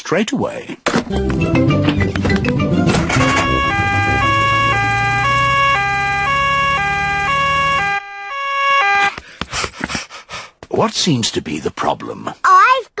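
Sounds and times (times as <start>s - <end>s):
low engine hum: 2.6s - 7.9s
two-tone cartoon siren: 2.9s - 9.2s.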